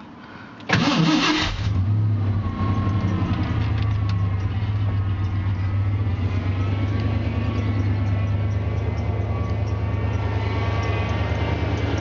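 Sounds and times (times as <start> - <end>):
pickup truck engine idling: 1.8 - 12.0.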